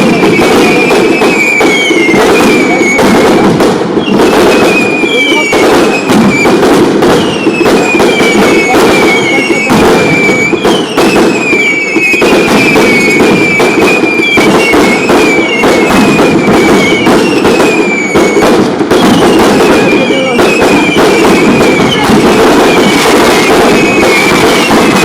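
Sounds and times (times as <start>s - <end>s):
crackling bangs: 0.0s - 25.0s
hissing rush of pyrotechnics: 0.0s - 25.0s
falling whistle: 4.0s - 6.5s, 7.2s - 18.4s.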